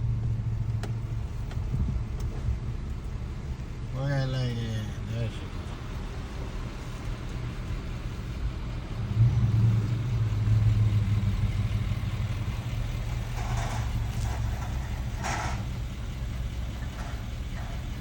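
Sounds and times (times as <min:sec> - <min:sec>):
vehicle engine running: 0:00.0 - 0:18.0.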